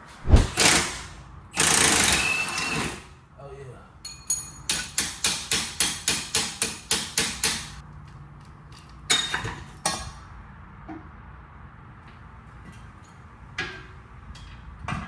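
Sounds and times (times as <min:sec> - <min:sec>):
hammer striking metal: 0:04.1 - 0:07.8.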